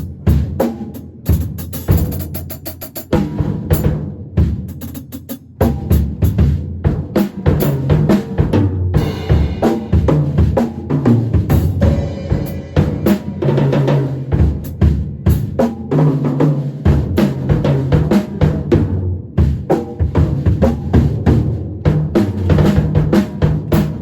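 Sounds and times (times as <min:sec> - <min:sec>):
drum kit groove: 0:00.0 - 0:24.0
cymbal crashes: 0:11.8 - 0:14.3.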